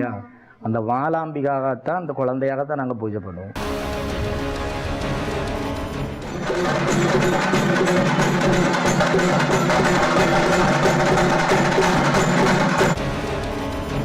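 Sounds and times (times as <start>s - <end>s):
fast percussion music: 5.1s - 14.0s.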